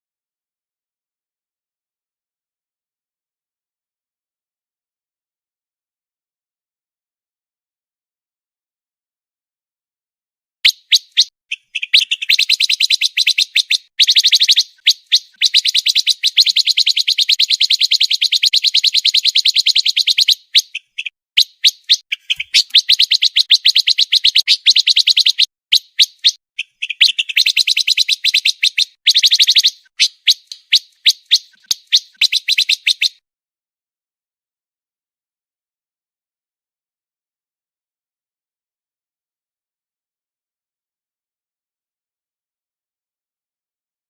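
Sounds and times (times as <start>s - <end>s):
songbird chattering song: 10.7s - 33.2s.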